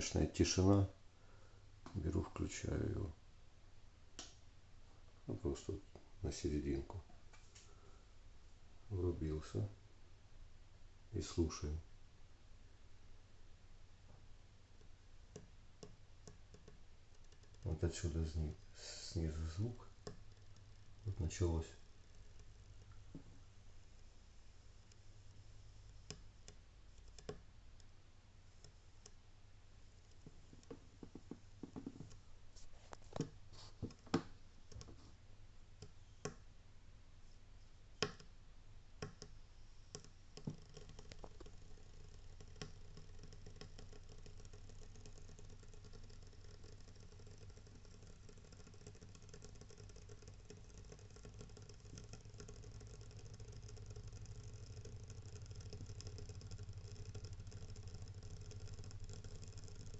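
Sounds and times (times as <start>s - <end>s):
steady low hum: 38.7s - 59.9s
water heater crackling and clicking: 40.0s - 59.9s.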